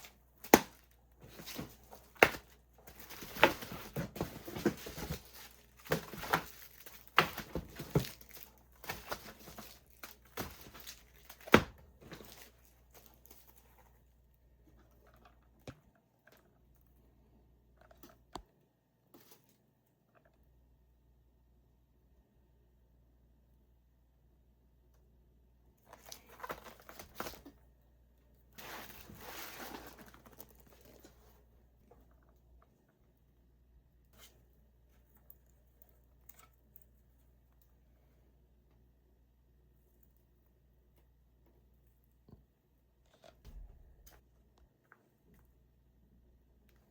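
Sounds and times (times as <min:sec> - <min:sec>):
packaging being handled: 0:00.0 - 0:13.6.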